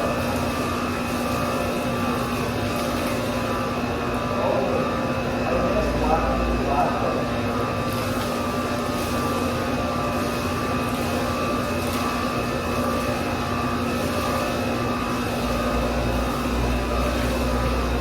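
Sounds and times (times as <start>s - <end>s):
machine hum: 0.0s - 18.0s.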